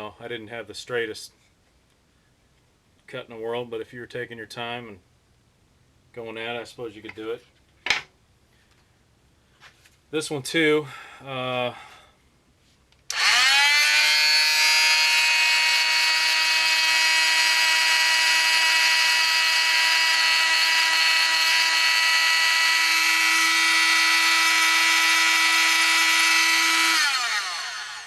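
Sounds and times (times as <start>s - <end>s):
oscillating multi-tool buzzing: 13.1s - 28.0s.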